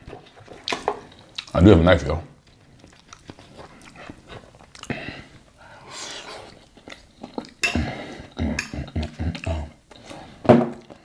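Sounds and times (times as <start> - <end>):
cutlery scraping a plate: 7.6 - 7.9.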